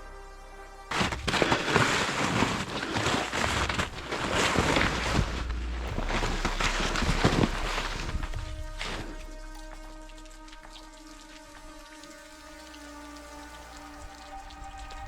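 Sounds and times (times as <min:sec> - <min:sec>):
low rumble: 0:00.0 - 0:15.0
wind buffeting microphone: 0:02.3 - 0:09.5.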